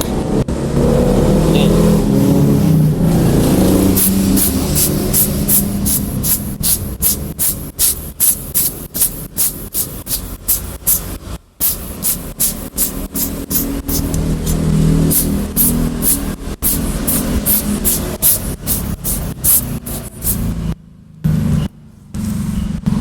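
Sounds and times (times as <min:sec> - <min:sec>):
short hissing strokes: 0:03.4 - 0:20.7.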